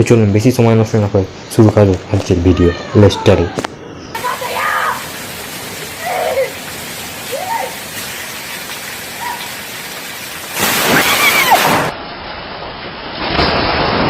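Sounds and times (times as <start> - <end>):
heavy rain hissing: 3.8 - 12.0.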